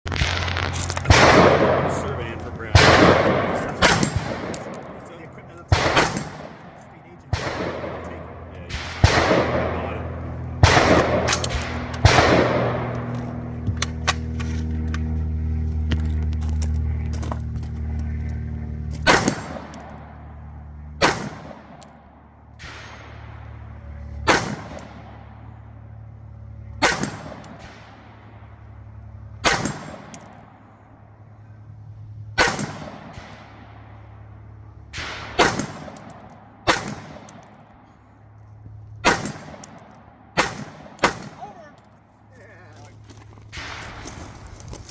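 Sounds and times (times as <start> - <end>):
rifle shots: 0.1 - 13.1, 19.0 - 20.3, 21.0 - 21.9, 22.6 - 23.6, 24.2 - 25.4, 26.8 - 28.2, 29.4 - 30.3, 32.4 - 33.9, 34.9 - 37.4, 39.0 - 41.9
low hum: 0.1 - 44.9
metallic clang of steel target: 1.1 - 5.1.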